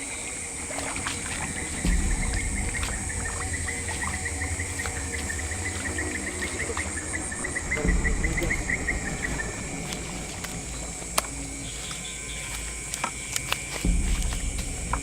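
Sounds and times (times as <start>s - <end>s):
insect chirps: 0.0s - 15.0s
insects buzzing: 0.0s - 15.0s
low rumble: 0.0s - 15.0s.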